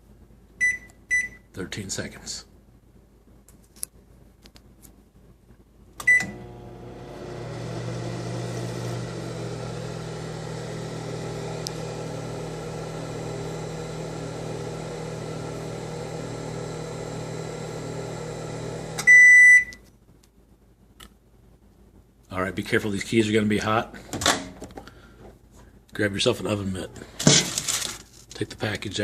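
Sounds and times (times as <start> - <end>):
microwave keypad beep: 0.6 - 1.5, 6.1 - 6.4, 19.0 - 19.8
microwave oven humming: 6.0 - 19.8.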